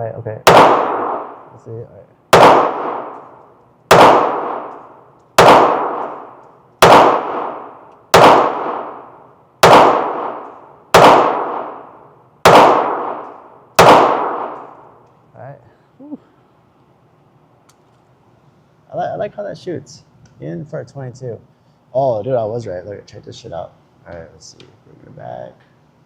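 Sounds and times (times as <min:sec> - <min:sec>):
pistol shots with ringing echo: 0:00.4 - 0:01.5, 0:02.3 - 0:14.9.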